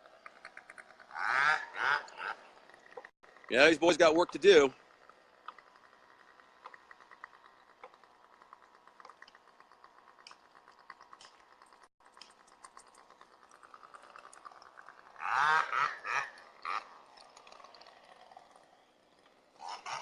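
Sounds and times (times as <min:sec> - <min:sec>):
faint rapid ticking: 0:02.0 - 0:15.3.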